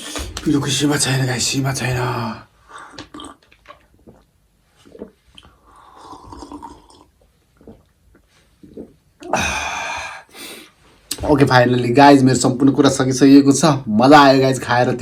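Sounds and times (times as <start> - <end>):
wet chewing and slurping: 2.8 - 9.0.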